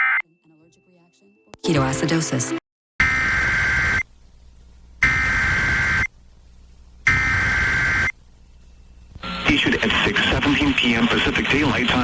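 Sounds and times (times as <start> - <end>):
digital data bursts: 3.0 - 4.0, 5.0 - 6.1, 7.1 - 8.2.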